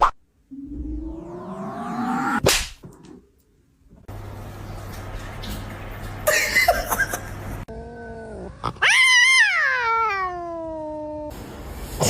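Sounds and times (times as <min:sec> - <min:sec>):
cat yowling: 0:07.9 - 0:11.3.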